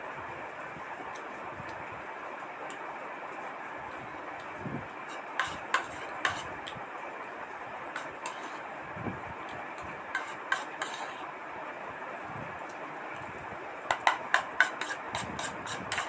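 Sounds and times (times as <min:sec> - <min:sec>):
steady background hiss: 0:00.0 - 0:16.0
utensil clicks and taps on plate: 0:05.1 - 0:06.8, 0:09.5 - 0:11.1, 0:13.9 - 0:16.0.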